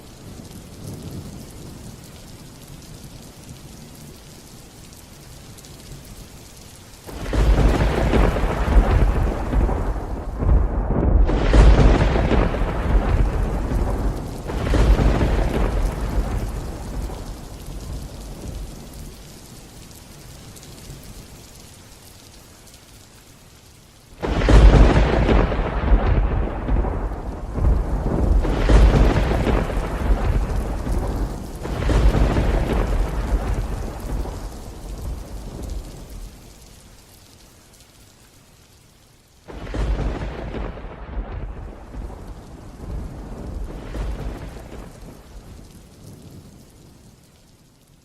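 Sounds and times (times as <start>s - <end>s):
rain: 0.0s - 48.0s
loud thunder clap: 7.1s - 18.7s, 24.2s - 36.2s, 39.5s - 45.2s
thunder rolling: 7.1s - 19.2s, 24.2s - 36.4s, 39.5s - 46.7s.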